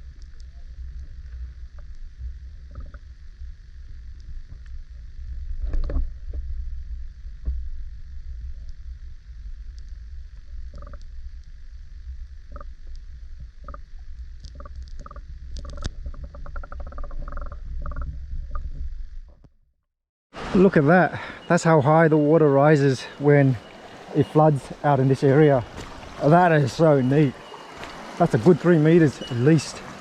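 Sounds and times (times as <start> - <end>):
wind rumble on microphone: 0.0 - 19.5.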